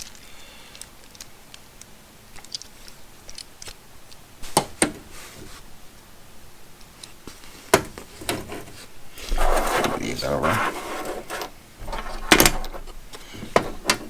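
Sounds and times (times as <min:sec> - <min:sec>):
plastic bag rustling: 0:07.3 - 0:14.0.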